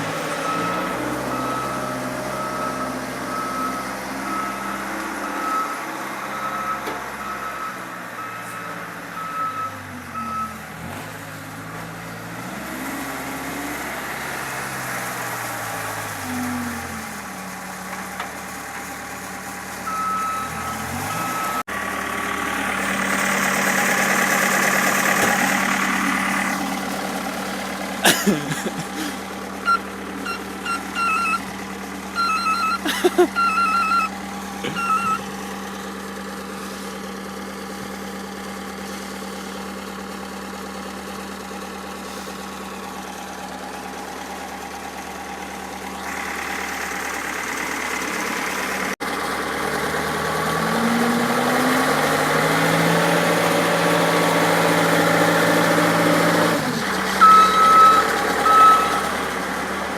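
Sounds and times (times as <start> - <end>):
car engine idling: 13.5 - 50.1
short high beeps: 29.7 - 31.4, 32.2 - 34.1, 34.7 - 35.2, 57.2 - 59.1.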